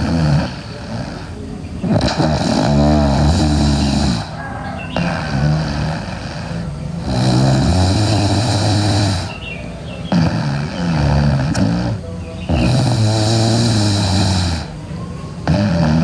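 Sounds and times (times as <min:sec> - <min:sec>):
girl snoring loudly: 0:00.0 - 0:16.0.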